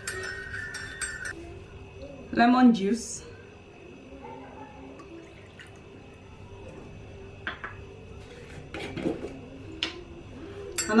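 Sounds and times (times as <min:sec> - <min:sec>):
liquid trickling into a cup: 0:04.9 - 0:06.8.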